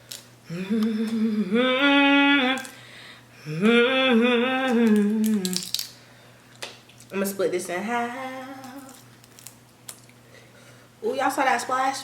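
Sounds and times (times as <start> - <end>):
woman humming a tune: 0.4 - 2.8, 3.4 - 5.7, 7.9 - 9.0.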